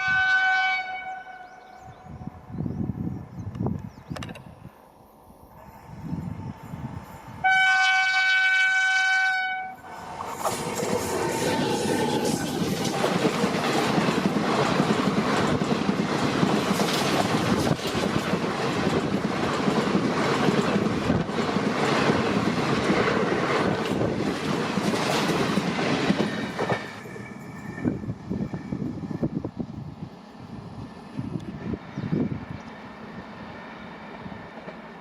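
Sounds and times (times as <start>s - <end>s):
train wheels clattering over rail joints: 10.2s - 28.0s.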